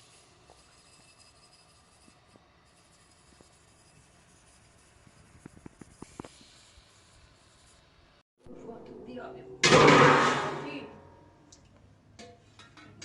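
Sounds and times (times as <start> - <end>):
faint scratchy rubbing: 0.0 - 8.0.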